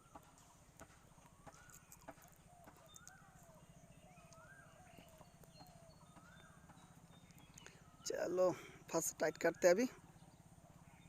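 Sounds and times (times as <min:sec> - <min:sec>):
faint bird chirps: 0:00.0 - 0:11.0.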